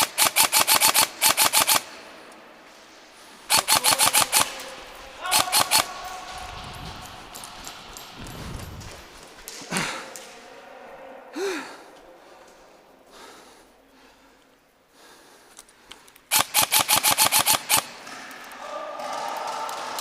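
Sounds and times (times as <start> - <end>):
airsoft rifle full-auto burst: 0.0 - 1.9, 3.5 - 6.1, 16.3 - 17.9.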